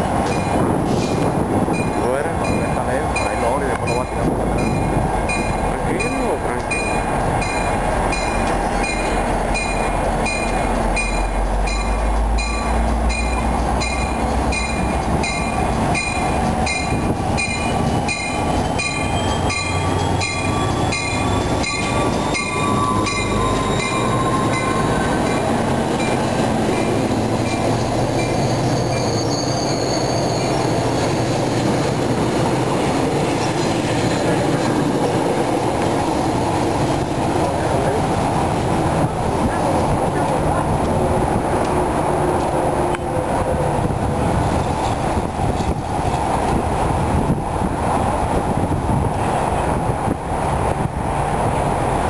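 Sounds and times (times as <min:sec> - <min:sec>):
train rumbling on rails: 0:00.0 - 0:52.0
high ringing: 0:01.8 - 0:30.8
thin squeal rising in pitch: 0:17.4 - 0:30.8.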